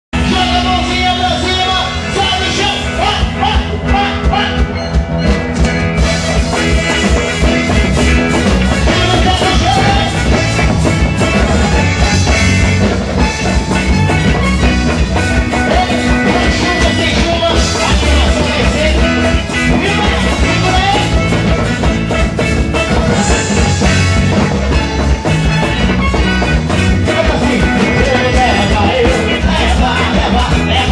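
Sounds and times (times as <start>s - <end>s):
drums: 0.1s - 30.9s
loud band music: 0.1s - 30.9s
person singing: 8.7s - 12.6s, 15.4s - 21.5s, 26.9s - 30.9s.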